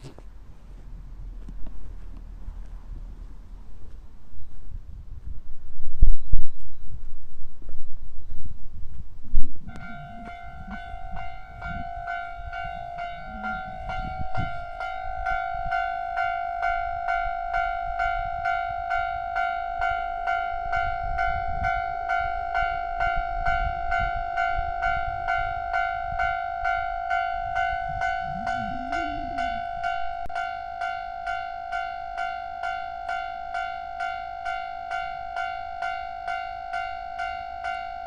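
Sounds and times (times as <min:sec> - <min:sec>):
level crossing warning bell: 0:09.7 - 0:38.0.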